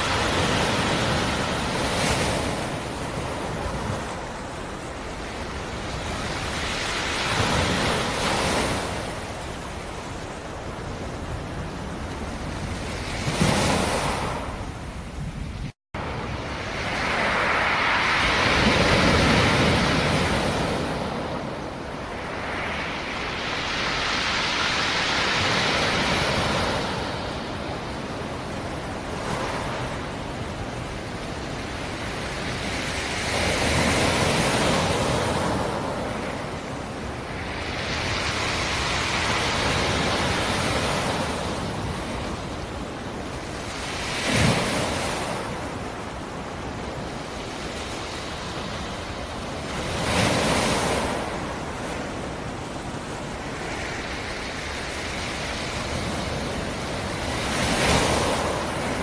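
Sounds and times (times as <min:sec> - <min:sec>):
waves breaking on shore: 0:00.0 - 0:59.0.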